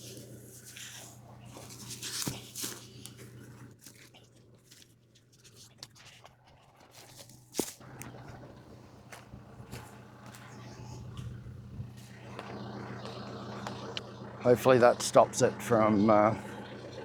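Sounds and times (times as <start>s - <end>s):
rustling handling noise: 0.0s - 12.6s
tractor engine idling: 7.8s - 17.0s.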